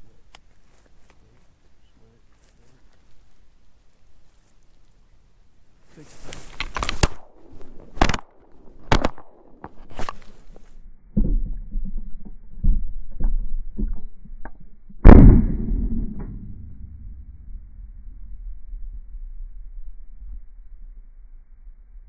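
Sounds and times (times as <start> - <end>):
shotgun shots: 6.8 - 10.2, 15.0 - 16.8.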